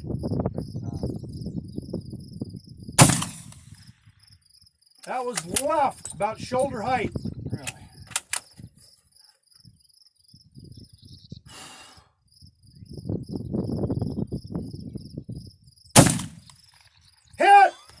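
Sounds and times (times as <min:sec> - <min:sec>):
insects chirping: 0:00.0 - 0:18.0
rifle shot: 0:03.0 - 0:03.8, 0:16.0 - 0:16.5.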